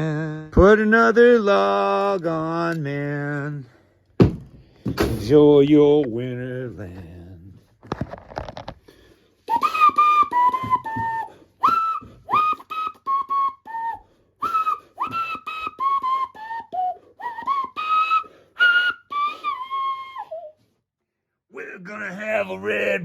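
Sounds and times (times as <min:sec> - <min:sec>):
person whistling a tune: 0:09.5 - 0:20.7.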